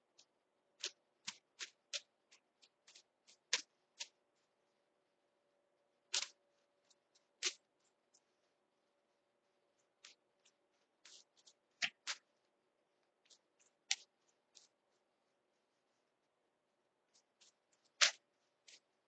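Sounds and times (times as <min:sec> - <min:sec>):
cards being shuffled: 0:06.1 - 0:07.6, 0:17.1 - 0:18.9
card slaps: 0:18.0 - 0:18.8.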